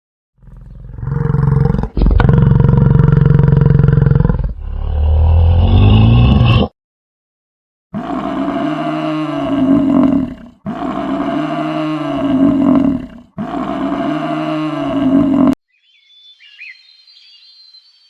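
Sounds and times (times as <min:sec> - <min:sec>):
large animal calling: 0:08.0 - 0:15.6.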